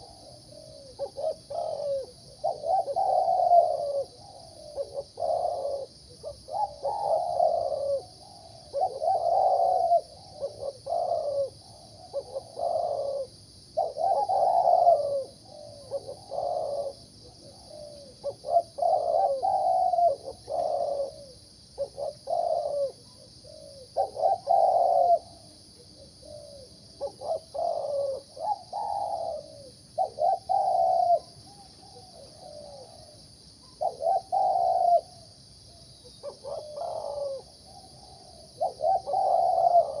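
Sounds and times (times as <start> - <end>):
dove cooing: 0.0 - 40.0.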